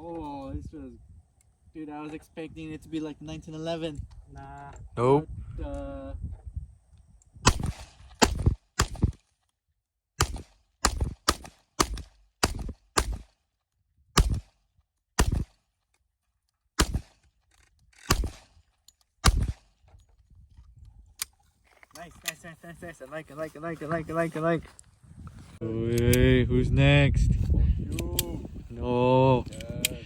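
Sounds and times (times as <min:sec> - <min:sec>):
pistol shots: 0:07.5 - 0:09.2, 0:10.2 - 0:13.4, 0:14.2 - 0:14.6, 0:15.2 - 0:15.6, 0:16.8 - 0:17.2, 0:18.1 - 0:18.5, 0:19.2 - 0:19.7.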